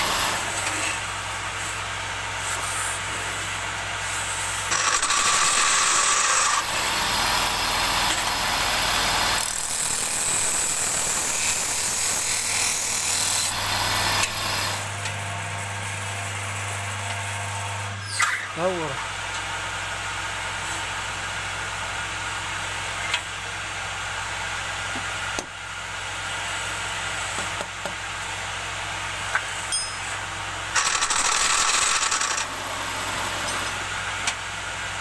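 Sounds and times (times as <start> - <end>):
wood lathe motor hum: 0.0 - 14.9, 30.6 - 34.4.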